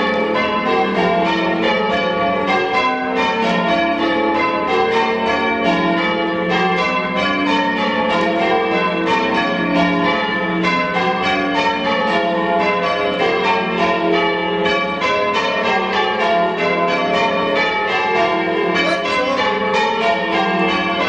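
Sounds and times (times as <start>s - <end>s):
church bells ringing: 0.0s - 21.0s.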